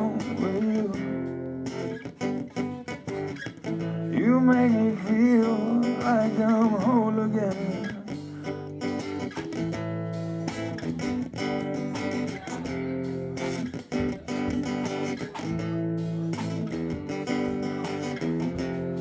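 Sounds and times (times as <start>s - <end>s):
guitar playing chords: 0.0s - 19.0s.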